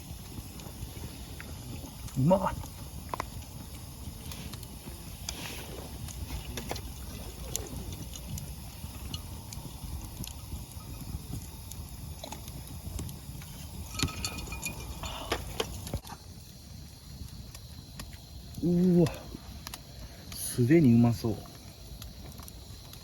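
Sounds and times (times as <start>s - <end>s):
campfire crackling and popping: 0.0s - 23.0s
metal cookware clinking: 13.8s - 15.7s.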